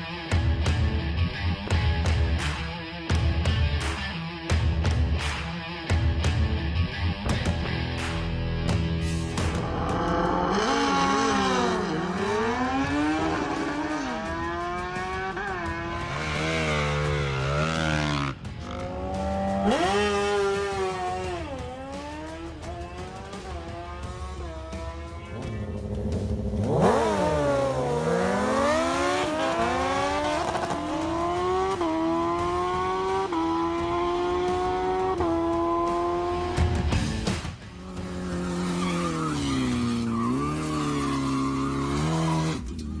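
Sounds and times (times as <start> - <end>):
car engine accelerating with gear shifts: 9.4 - 37.2, 37.9 - 43.0.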